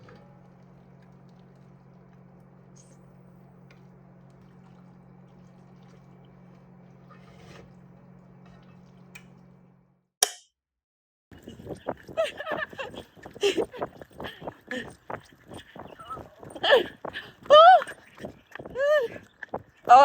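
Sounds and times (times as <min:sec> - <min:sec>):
faint low hum: 0:00.0 - 0:09.9.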